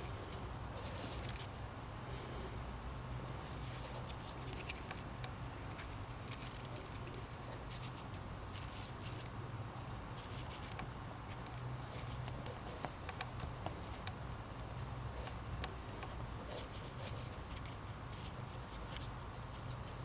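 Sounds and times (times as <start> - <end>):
small clicks and scrapes of parts: 0.0 - 1.6, 3.6 - 9.4, 10.1 - 20.0
steady low hum: 0.0 - 20.0.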